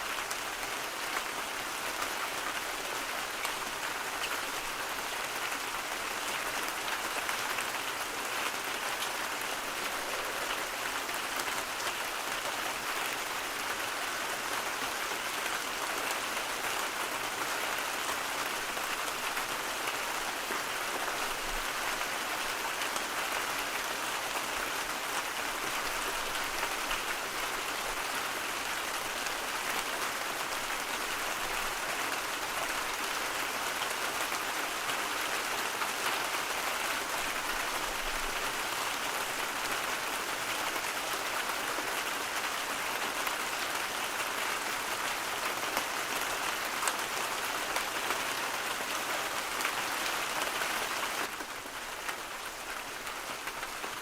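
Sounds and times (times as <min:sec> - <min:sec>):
steady rain: 0:00.0 - 0:54.0.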